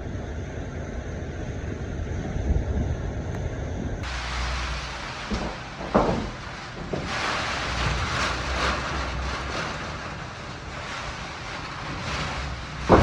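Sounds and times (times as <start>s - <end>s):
wind gusting over microphone: 0.0s - 13.0s.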